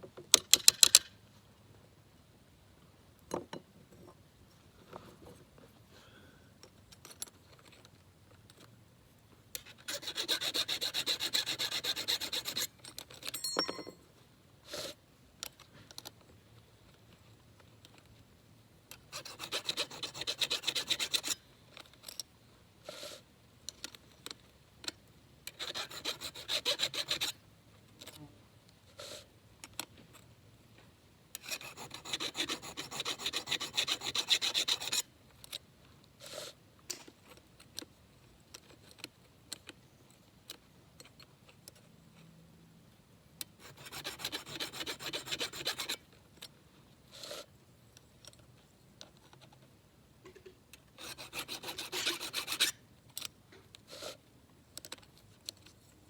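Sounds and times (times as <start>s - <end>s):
file rasping on saw chain: 9.6s - 13.4s, 19.1s - 21.4s, 25.5s - 27.4s, 31.4s - 35.0s, 43.6s - 46.0s, 51.0s - 52.8s.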